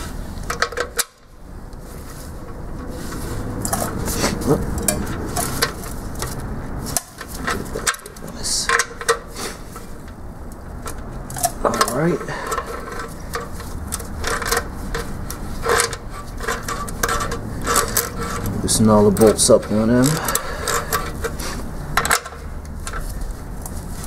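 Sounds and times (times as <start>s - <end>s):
wrench clinking on metal bolts: 4.7s - 9.3s, 10.8s - 21.4s, 22.0s - 23.1s.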